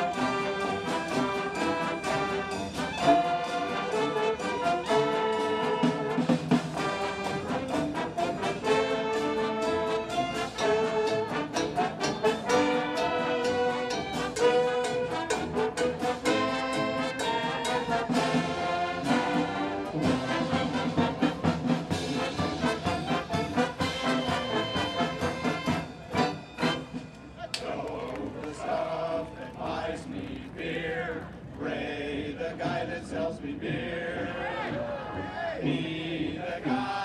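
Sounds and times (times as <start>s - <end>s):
steady drum beat: 0.0s - 27.1s
band with brass horns: 0.0s - 37.0s.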